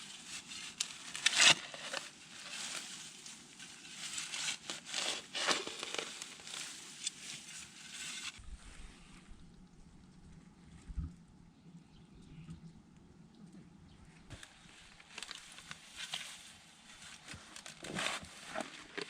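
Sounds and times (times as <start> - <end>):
shovel scraping into clay soil: 0.8 - 2.6, 4.2 - 7.2.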